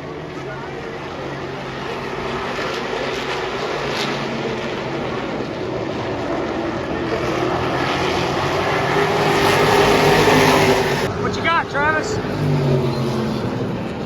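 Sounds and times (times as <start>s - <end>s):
race car engines droning: 0.0s - 14.0s.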